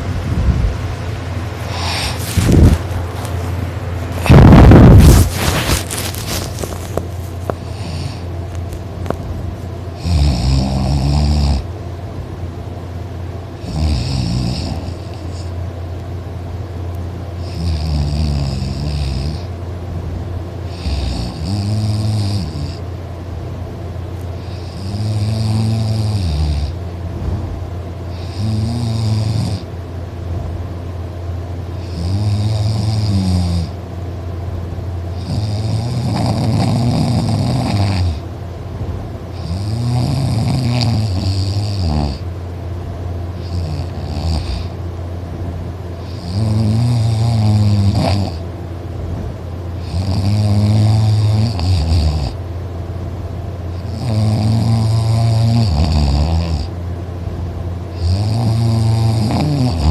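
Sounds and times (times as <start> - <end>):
steady low hum: 0.0 - 59.9
man snoring loudly: 4.2 - 6.7, 7.6 - 8.3, 10.0 - 11.7, 13.6 - 15.5, 17.4 - 19.5, 20.7 - 22.8, 24.4 - 26.8, 28.1 - 29.7, 31.8 - 33.8, 35.1 - 38.2, 39.3 - 42.2, 43.4 - 44.8, 46.0 - 48.4, 49.8 - 52.4, 53.7 - 56.8, 57.9 - 59.9.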